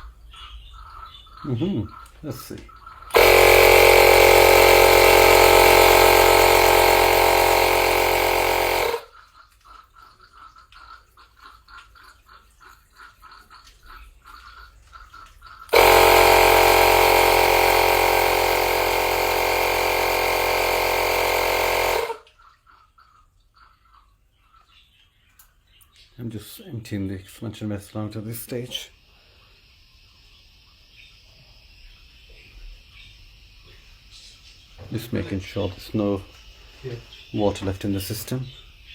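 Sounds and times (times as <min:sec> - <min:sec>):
electric air pump running: 0:03.1 - 0:09.1, 0:15.7 - 0:22.2.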